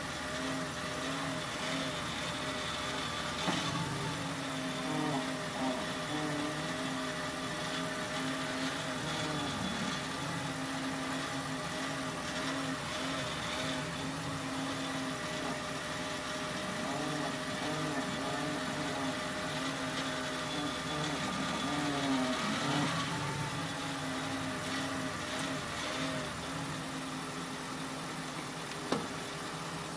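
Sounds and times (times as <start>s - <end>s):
car engine idling: 0.0s - 29.9s
steering squeaks: 5.4s - 26.4s.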